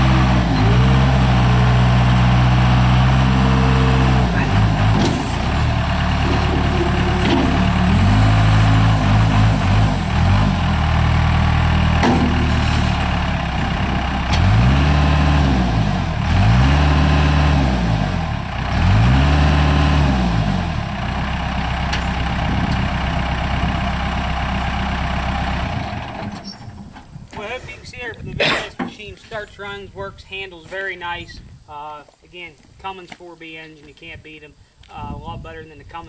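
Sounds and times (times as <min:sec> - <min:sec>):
diesel engine revving: 0:00.0 - 0:26.5.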